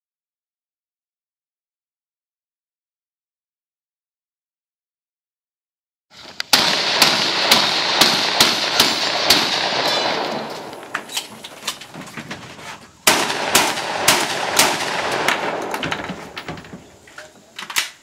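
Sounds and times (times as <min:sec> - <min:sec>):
gunshots with echo: 0:06.5 - 0:11.4, 0:13.0 - 0:17.0.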